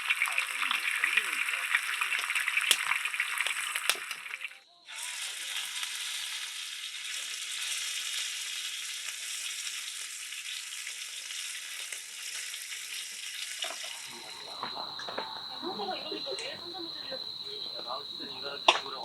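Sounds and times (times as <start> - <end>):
meat sizzling in a pan: 0.0 - 19.0.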